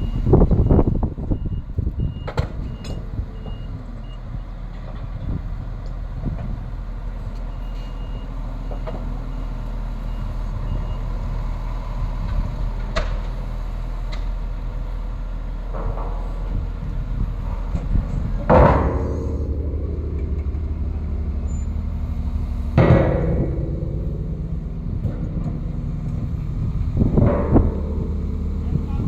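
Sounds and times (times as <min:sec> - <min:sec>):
crane diesel engine running: 0:00.0 - 0:29.0
sharp metal knocks: 0:17.7 - 0:29.0.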